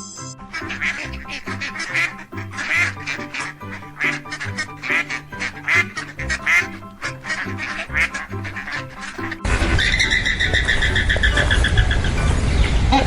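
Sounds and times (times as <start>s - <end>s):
background music: 0.0s - 13.0s
animal calling: 0.6s - 13.0s.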